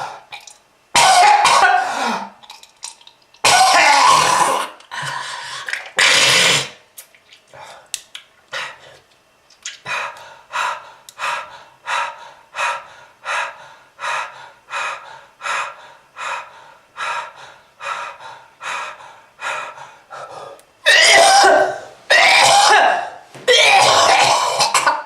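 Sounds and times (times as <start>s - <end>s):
person breathing hard: 0.0s - 0.3s, 9.8s - 20.6s.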